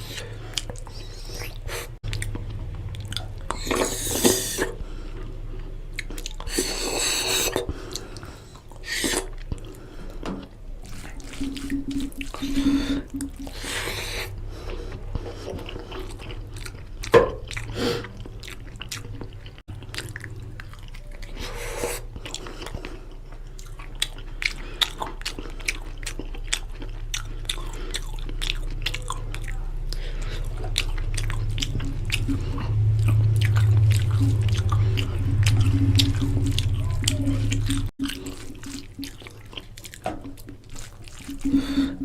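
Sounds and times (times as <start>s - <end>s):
low hum: 0.0s - 18.4s, 27.4s - 42.0s
wet chewing and mouth clicks: 0.0s - 42.0s.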